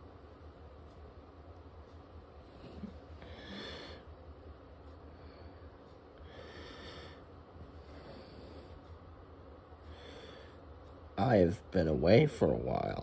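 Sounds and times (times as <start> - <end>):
low steady hum: 0.0 - 13.0
person breathing: 2.5 - 4.1, 4.9 - 8.9, 9.8 - 10.7.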